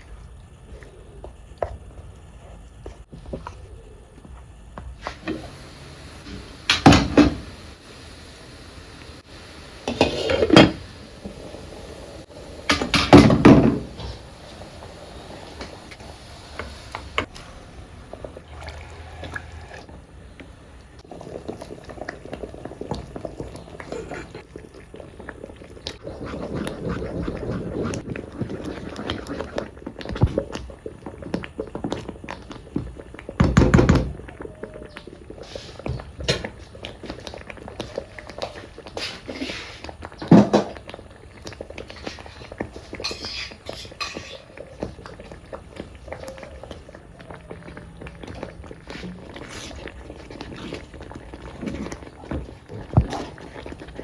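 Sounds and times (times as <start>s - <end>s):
household handling sounds: 5.0s - 24.4s.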